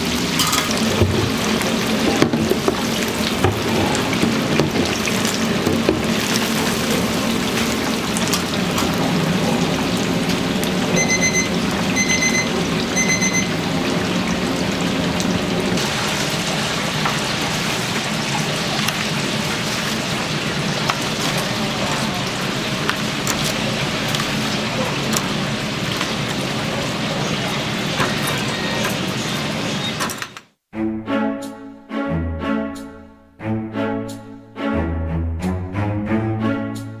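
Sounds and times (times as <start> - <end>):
oil sizzling: 0.0 - 29.9
electronic timer beeps: 11.0 - 13.6.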